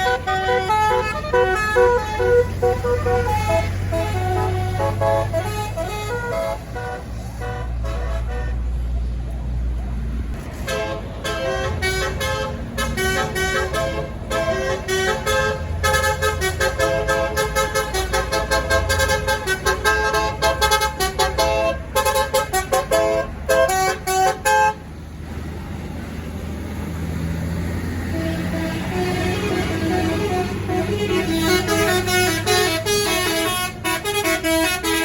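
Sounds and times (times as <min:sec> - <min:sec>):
multi-tone bus horn melody: 0:00.0 - 0:09.0, 0:10.4 - 0:24.9, 0:27.9 - 0:35.0
vehicle engine running low: 0:00.0 - 0:35.0.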